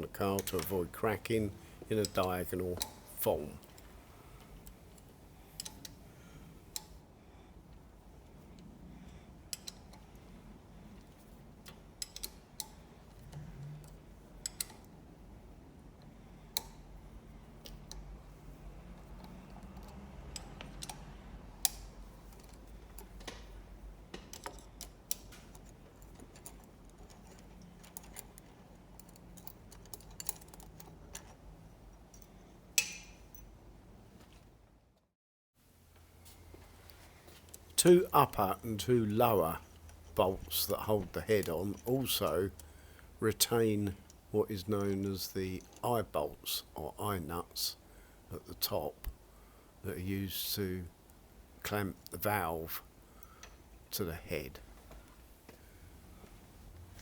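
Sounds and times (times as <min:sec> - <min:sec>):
low steady hum: 0:00.0 - 0:35.0, 0:35.7 - 0:57.0
spanner clicking on bolts: 0:00.1 - 0:06.0, 0:09.5 - 0:10.2, 0:11.6 - 0:14.9, 0:19.0 - 0:31.4, 0:32.1 - 0:33.4.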